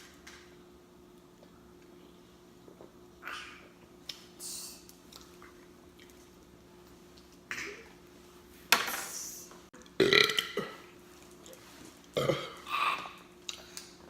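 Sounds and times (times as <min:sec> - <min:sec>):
woman burping loudly: 0:10.0 - 0:10.8, 0:12.2 - 0:13.2.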